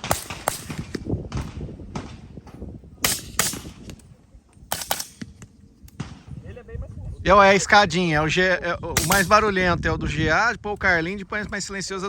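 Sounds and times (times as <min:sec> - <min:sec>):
suppressed rifle shots: 0:00.0 - 0:02.3, 0:03.0 - 0:06.3, 0:09.0 - 0:09.5.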